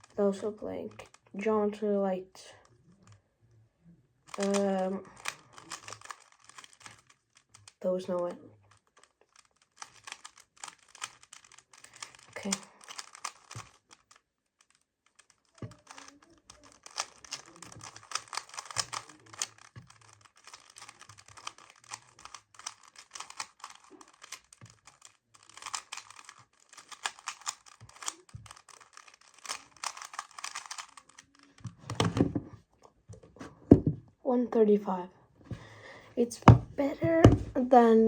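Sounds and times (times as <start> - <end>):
puzzle cube clicking: 4.3 - 32.4, 35.5 - 37.6.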